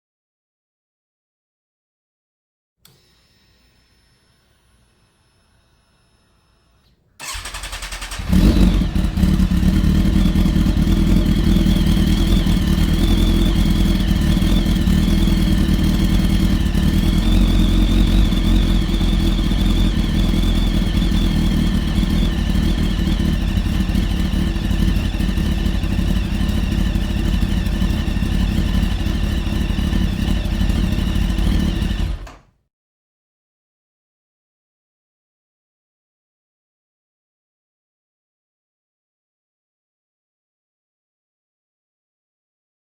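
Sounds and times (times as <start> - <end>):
motorcycle engine running: 7.2 - 32.3
starter whirring: 7.2 - 32.5.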